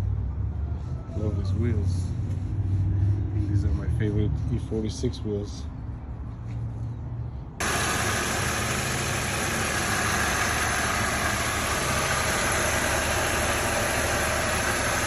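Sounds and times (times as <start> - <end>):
car engine idling: 7.6 - 15.0.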